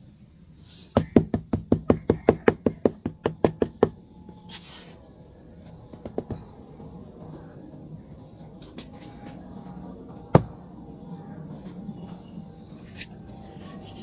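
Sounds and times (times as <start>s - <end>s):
fast hard knocks: 1.0s - 4.0s, 5.9s - 6.5s, 10.3s - 10.6s
softer knocks: 10.4s - 10.6s.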